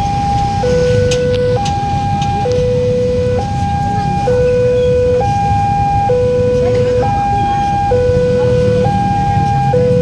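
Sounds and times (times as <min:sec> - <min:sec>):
steady low rumble: 0:00.0 - 0:10.0
two-tone level crossing siren: 0:00.0 - 0:10.0.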